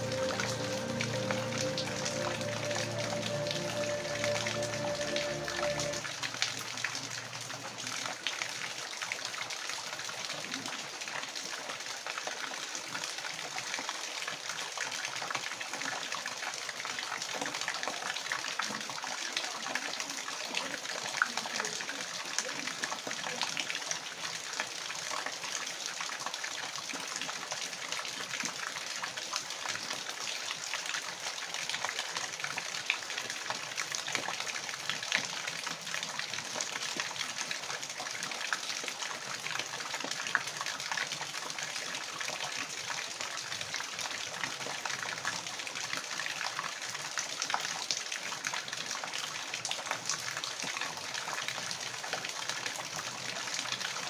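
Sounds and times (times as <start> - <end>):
water flowing and splashing: 0.0 - 10.1.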